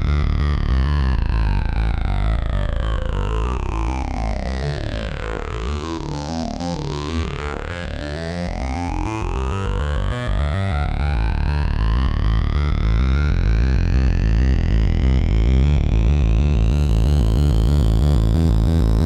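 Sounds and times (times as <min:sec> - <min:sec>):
synthesizer bass notes: 0:09.6 - 0:19.0.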